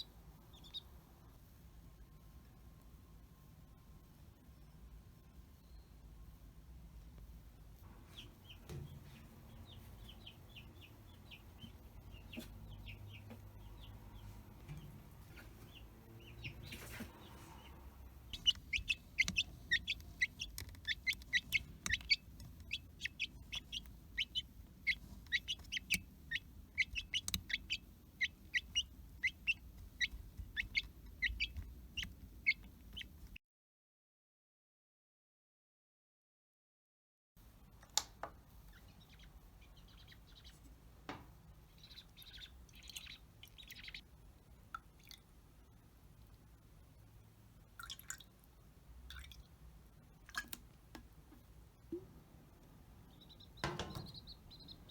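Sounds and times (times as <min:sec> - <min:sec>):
chick peeping: 0:00.0 - 0:01.1, 0:07.9 - 0:33.4, 0:38.0 - 0:44.2, 0:51.8 - 0:54.9.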